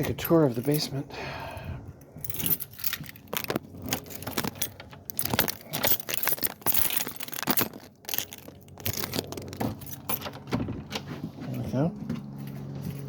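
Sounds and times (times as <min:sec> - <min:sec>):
keys jangling: 0:00.0 - 0:01.0, 0:02.0 - 0:10.6, 0:12.3 - 0:13.0
metallic clicks and rattles: 0:02.2 - 0:11.0.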